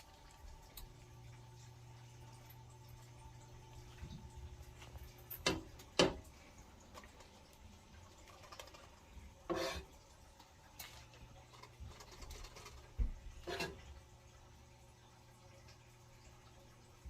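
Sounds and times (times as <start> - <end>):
low steady hum: 0.0 - 17.0
kitchen scrapes and knocks: 9.5 - 9.9, 12.0 - 13.8.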